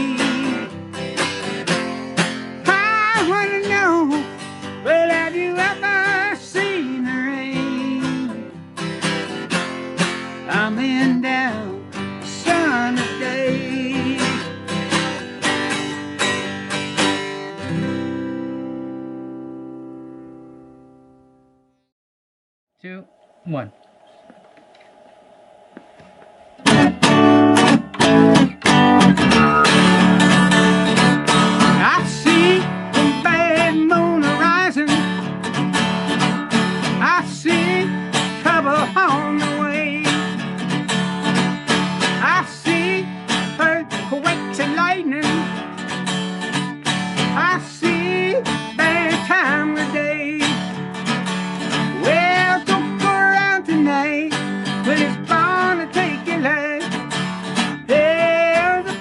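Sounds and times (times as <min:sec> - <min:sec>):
acoustic guitar strumming: 0:00.0 - 0:21.6, 0:22.8 - 0:59.0
wavering melody line: 0:22.8 - 0:29.2.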